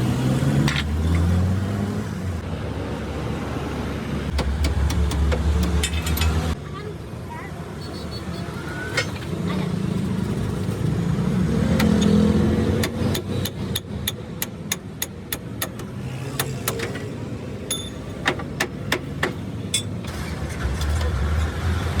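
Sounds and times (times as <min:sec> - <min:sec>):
sharp metallic knocks: 0:04.3 - 0:06.6, 0:11.8 - 0:20.0.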